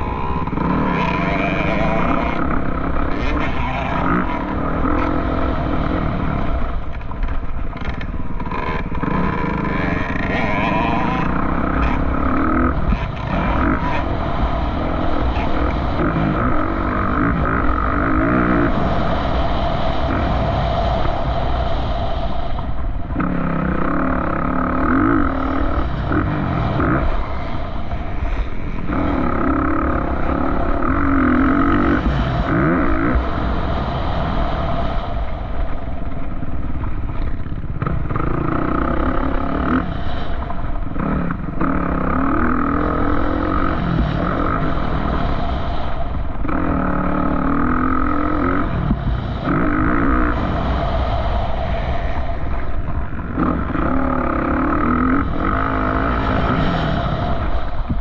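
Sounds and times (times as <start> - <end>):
off-road vehicle engine revving: 7.8 - 19.2, 23.2 - 27.8, 28.6 - 33.6, 41.0 - 45.2, 53.4 - 58.0.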